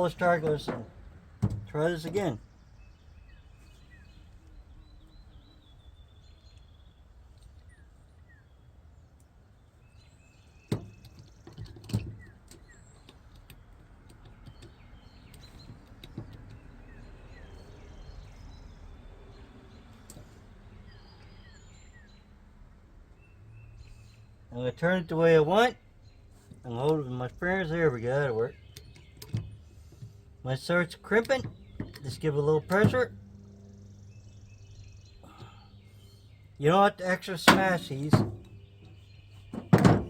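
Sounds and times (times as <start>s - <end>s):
faint bird chirps: 1.7s - 13.6s, 31.0s - 36.7s
low steady hum: 25.8s - 40.0s
handling wire and hand tools: 31.0s - 33.2s.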